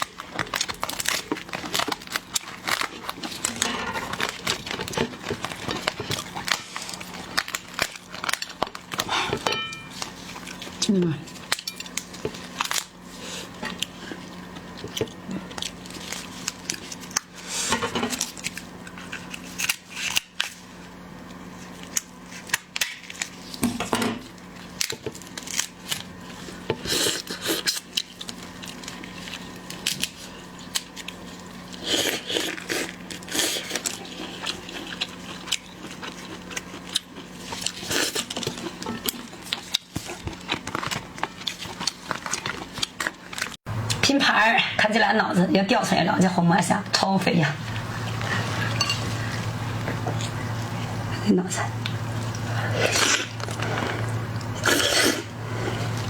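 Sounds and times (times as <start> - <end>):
shells cracking and snipping: 0.0 - 13.0, 18.1 - 20.6
low hum: 45.2 - 56.0.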